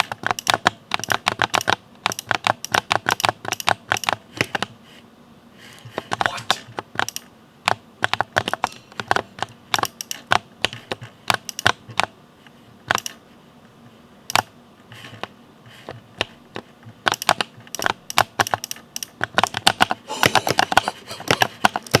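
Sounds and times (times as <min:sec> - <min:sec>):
mechanical keyboard typing: 0:00.0 - 0:04.7, 0:05.9 - 0:12.1, 0:12.9 - 0:13.2, 0:14.3 - 0:15.3, 0:16.2 - 0:22.0.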